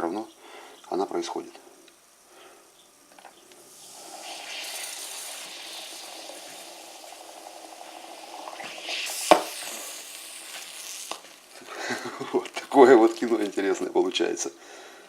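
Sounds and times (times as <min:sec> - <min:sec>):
cola fizzing in a glass: 0:03.7 - 0:13.6
sharp knock: 0:09.2 - 0:09.6.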